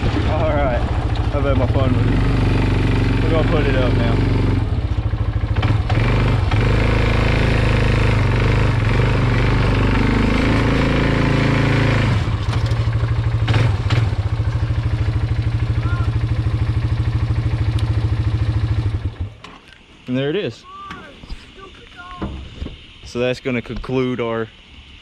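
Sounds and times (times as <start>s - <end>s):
atv engine running and idling: 0.0s - 20.0s.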